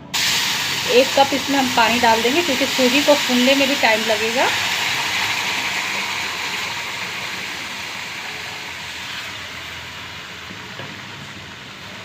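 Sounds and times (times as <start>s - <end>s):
food sizzling in a hot pan: 0.1s - 12.0s.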